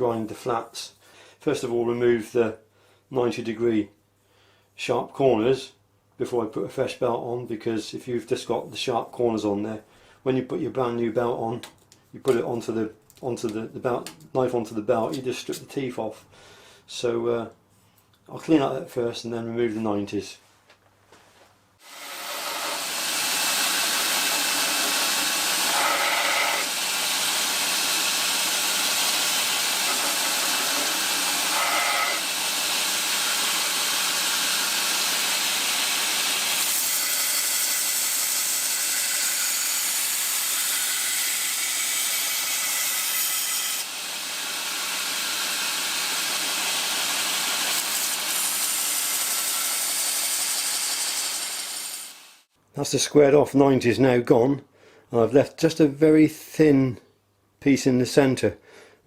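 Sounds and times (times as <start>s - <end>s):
belt grinder grinding metal: 21.8s - 52.4s.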